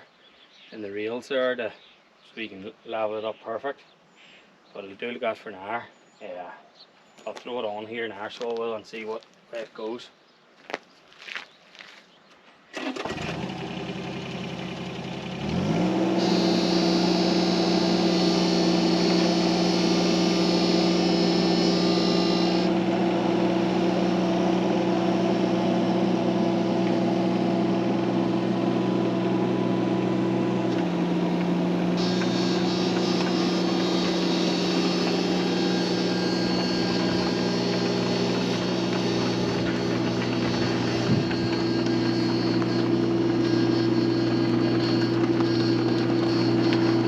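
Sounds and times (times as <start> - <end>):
engine running: 12.8 - 47.0
high-pitched whine: 16.0 - 47.0.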